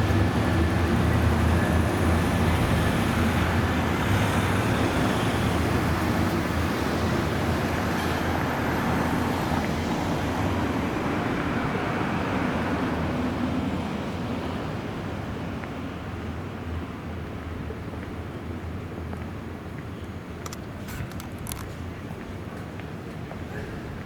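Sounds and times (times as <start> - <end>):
vehicle engine hum: 0.0 - 14.5
road noise: 0.0 - 24.0.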